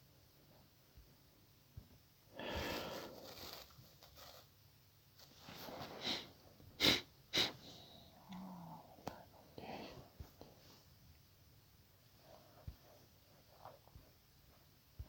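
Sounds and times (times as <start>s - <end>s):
person breathing close to microphone: 2.3s - 3.6s, 5.6s - 10.7s
short sharp sniffs: 5.4s - 8.1s.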